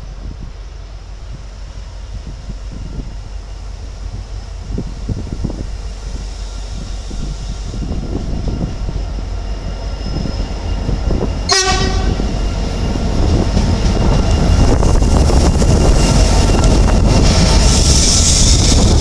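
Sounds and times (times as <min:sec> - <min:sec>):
train rumble: 0:00.0 - 0:19.0
train horn blast: 0:11.5 - 0:12.5.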